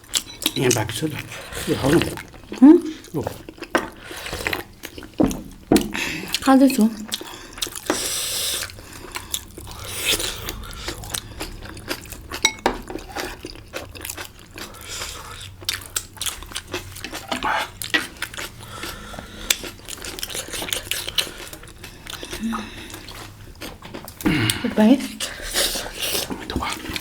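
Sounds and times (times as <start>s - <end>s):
biting and chewing: 7.1s - 24.6s.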